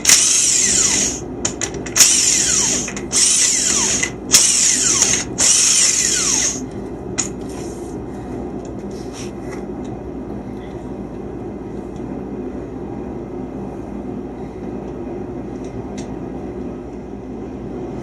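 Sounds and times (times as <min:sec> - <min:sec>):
power drill bursts: 0:00.0 - 0:01.2, 0:02.0 - 0:06.6.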